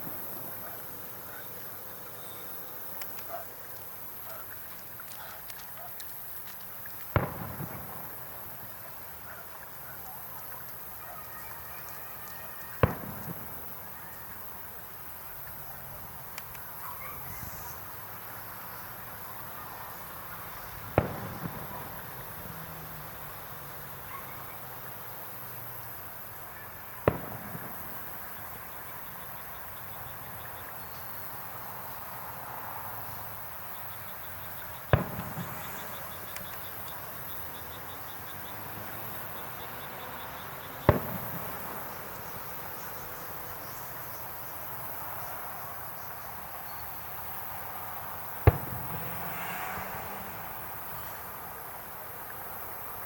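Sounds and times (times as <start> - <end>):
insects chirping: 0.0 - 53.0
fireworks bangs: 7.0 - 14.5, 20.5 - 23.4, 26.9 - 31.3, 34.4 - 42.9, 48.3 - 51.1.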